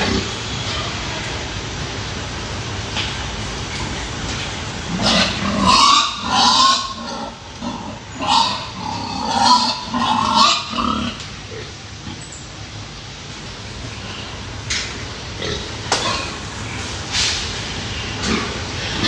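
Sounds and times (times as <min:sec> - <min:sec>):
pigs crying loudly: 0:00.0 - 0:01.1, 0:04.9 - 0:12.3, 0:15.3 - 0:16.8, 0:17.8 - 0:19.0.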